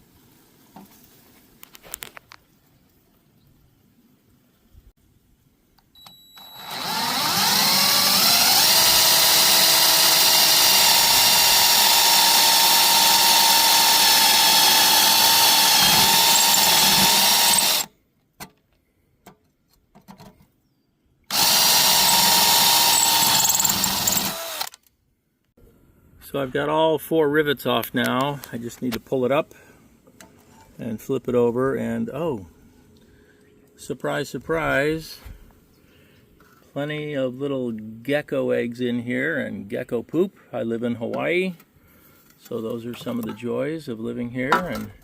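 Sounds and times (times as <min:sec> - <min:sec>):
electric drill drilling: 0:06.4 - 0:17.9, 0:21.3 - 0:24.8.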